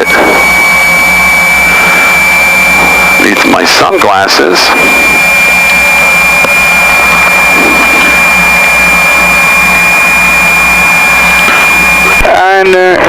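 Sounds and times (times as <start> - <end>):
high-pitched whine: 0.0 - 13.0
propeller aircraft engines droning: 0.0 - 13.0.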